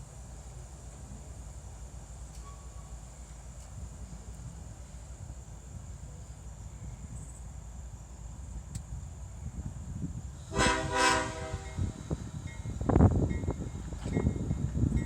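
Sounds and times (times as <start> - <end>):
locomotive air horn blast: 10.4 - 12.2.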